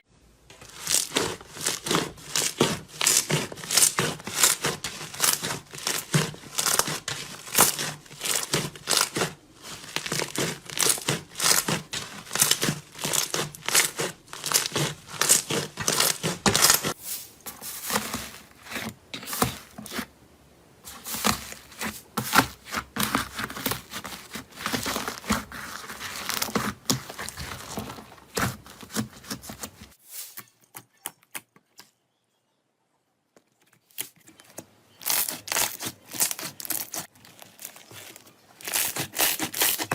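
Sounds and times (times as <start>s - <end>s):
slime crackling and popping: 0.5s - 17.0s, 35.0s - 39.9s.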